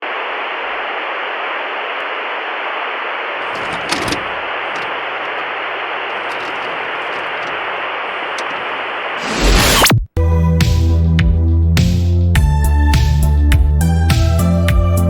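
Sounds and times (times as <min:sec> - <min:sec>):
faint crackles and clicks: 0:03.4 - 0:09.8.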